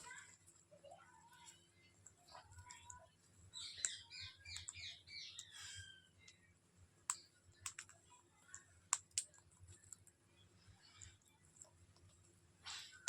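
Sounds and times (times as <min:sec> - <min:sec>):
parakeets chirping: 0:03.6 - 0:06.1.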